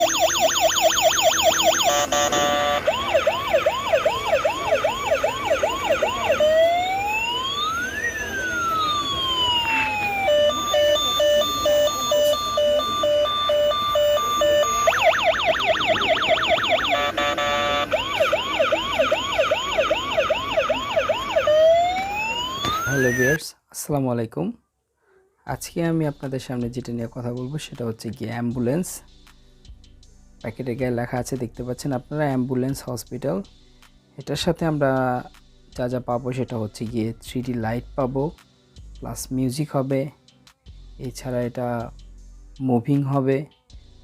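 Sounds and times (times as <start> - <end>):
electronic emergency siren: 0.0 - 23.4.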